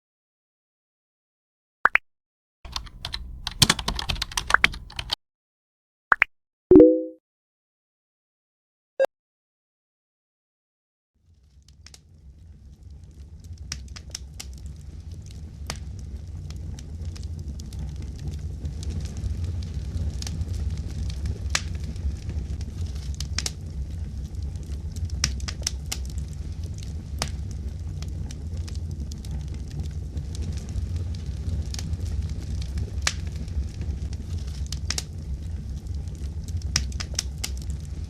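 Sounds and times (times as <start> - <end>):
fire crackling with pops: 11.7 - 38.0.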